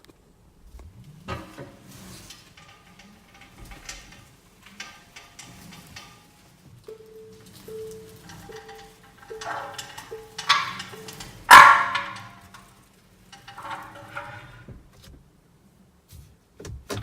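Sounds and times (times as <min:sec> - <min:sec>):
metallic clanks and scraping from brake: 0:00.6 - 0:15.2
short metallic ringing tones: 0:06.9 - 0:12.7.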